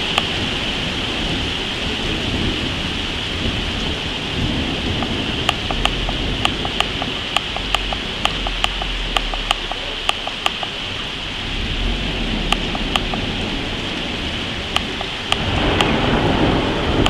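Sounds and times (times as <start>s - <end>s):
low thunder rumble: 0.0s - 17.0s
steady rain: 0.0s - 17.0s
sharp ticking in pairs: 5.0s - 10.8s, 12.5s - 13.3s, 14.7s - 15.9s.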